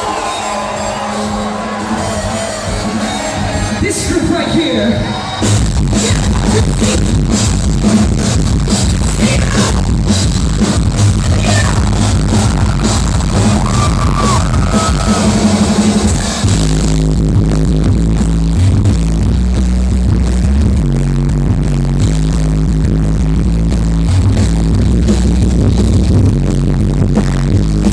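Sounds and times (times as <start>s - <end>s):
electronic dance music: 0.0s - 17.0s.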